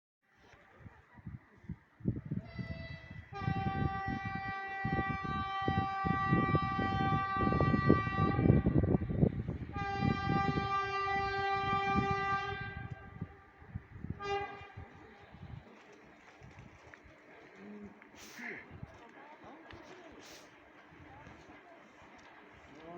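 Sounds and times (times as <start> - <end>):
train horn blasts: 2.5 - 13.5, 14.1 - 15.1
train rumbling on track: 3.3 - 15.8.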